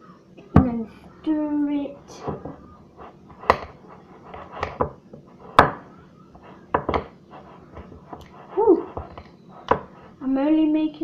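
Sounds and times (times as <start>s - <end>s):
spoon scraping thick mixture: 2.0s - 10.3s.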